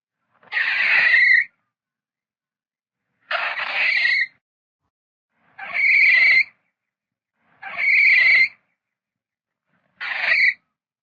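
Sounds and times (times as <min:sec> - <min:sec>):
mole squeaking: 0:00.4 - 0:01.6, 0:03.3 - 0:04.4, 0:05.6 - 0:06.6, 0:07.6 - 0:08.6, 0:10.0 - 0:10.6.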